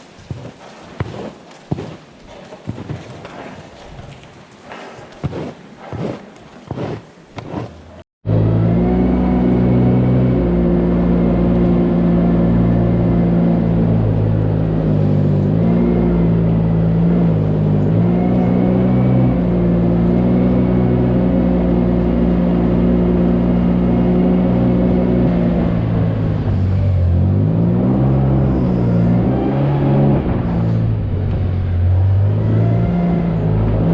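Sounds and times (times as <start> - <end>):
heavy engine running: 8.3 - 33.9.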